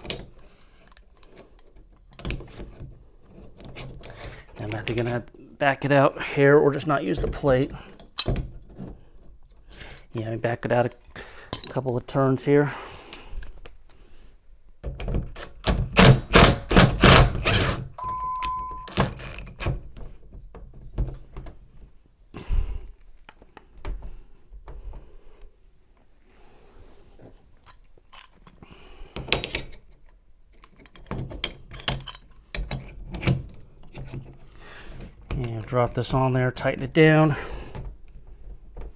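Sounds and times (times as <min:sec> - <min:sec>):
steady beep-like tone: 0:18.0 - 0:18.9
metal tools knocking and clicking: 0:30.6 - 0:34.2.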